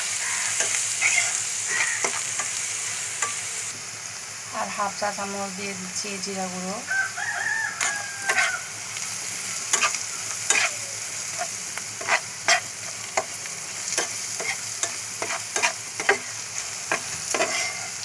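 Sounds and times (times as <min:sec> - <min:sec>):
onions sizzling in oil: 0:00.0 - 0:18.0
utensil scraping pan: 0:00.6 - 0:02.6, 0:07.8 - 0:08.6, 0:09.6 - 0:18.0.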